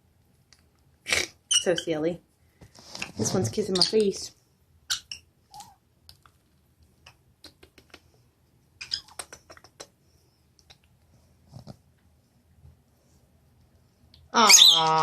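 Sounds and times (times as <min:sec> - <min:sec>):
bird beak clicks: 0:07.0 - 0:08.2, 0:08.8 - 0:09.9.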